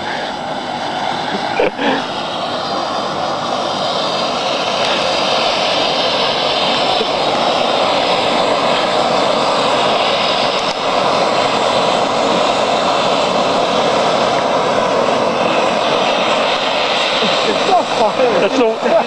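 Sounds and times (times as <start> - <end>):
fireworks burning with rushing hiss: 0.0 - 19.0.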